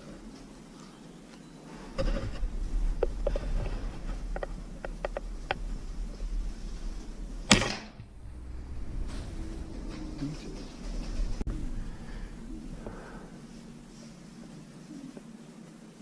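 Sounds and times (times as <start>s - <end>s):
low steady rumble: 1.9s - 16.0s
air rifle shot: 7.5s - 8.1s.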